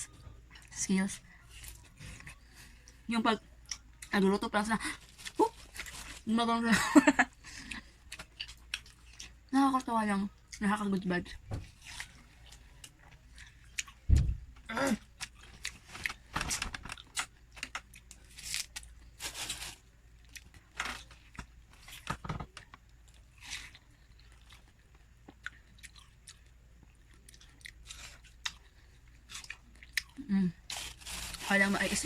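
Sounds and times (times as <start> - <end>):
person chewing watermelon: 0.4 - 3.0, 7.5 - 9.5, 11.6 - 14.1, 15.0 - 16.3, 20.0 - 22.0, 22.8 - 31.4.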